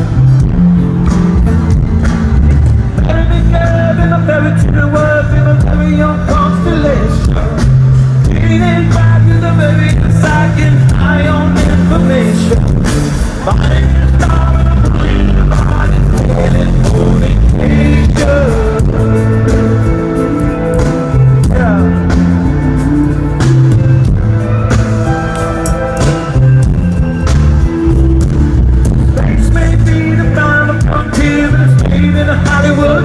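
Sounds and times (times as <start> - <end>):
rock band playing live: 0.0 - 33.0
person singing: 3.0 - 23.8, 29.0 - 33.0.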